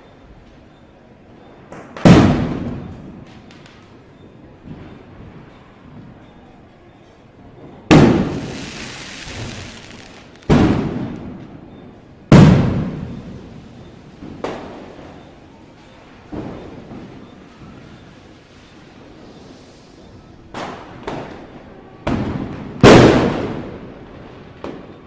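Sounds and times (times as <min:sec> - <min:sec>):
firecrackers banging: 0:01.5 - 0:06.6, 0:07.5 - 0:25.0
high hiss: 0:08.2 - 0:10.4.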